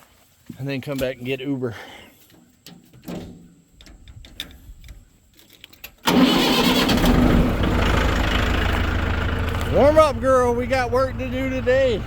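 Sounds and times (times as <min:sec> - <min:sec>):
tractor engine starting and running: 0:06.0 - 0:12.0.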